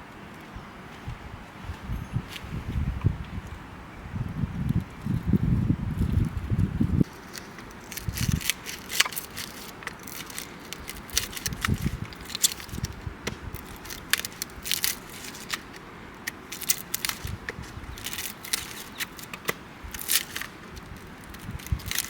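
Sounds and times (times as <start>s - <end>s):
campfire crackling and popping: 7.0s - 22.0s.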